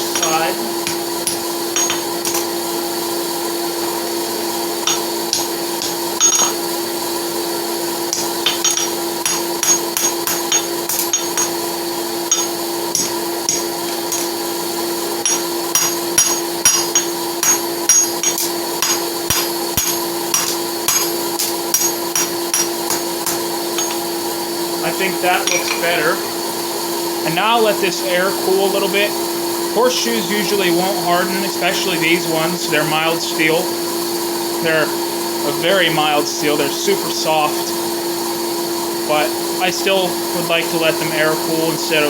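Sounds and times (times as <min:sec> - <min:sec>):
hammer tapping on anvil: 0:00.0 - 0:02.5, 0:04.8 - 0:06.6, 0:08.1 - 0:11.6, 0:12.3 - 0:14.4, 0:15.2 - 0:24.1, 0:25.4 - 0:26.0
steady hum: 0:00.0 - 0:42.0.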